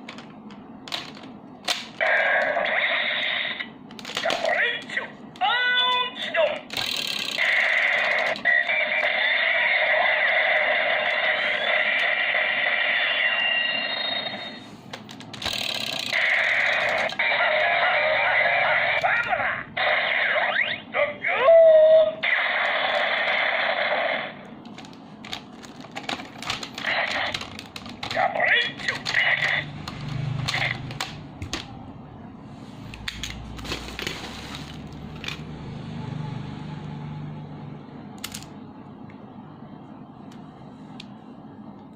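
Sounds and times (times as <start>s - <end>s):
low steady hum: 0.0s - 41.9s
toy gun electronic sound effects: 2.0s - 5.0s, 6.7s - 14.6s, 15.4s - 20.9s, 22.2s - 24.3s, 26.8s - 31.2s.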